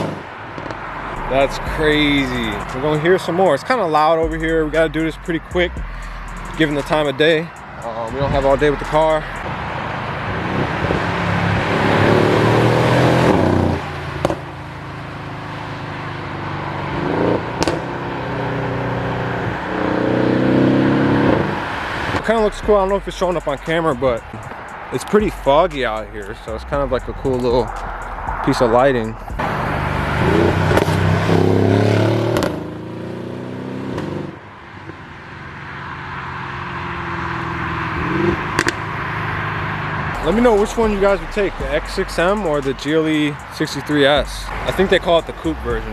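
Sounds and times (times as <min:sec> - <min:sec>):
sharp exhaust cracks: 0:00.0 - 0:09.6, 0:21.6 - 0:31.6, 0:40.2 - 0:45.9
v eight exhaust revving: 0:00.0 - 0:14.4, 0:16.8 - 0:34.2, 0:40.1 - 0:45.9.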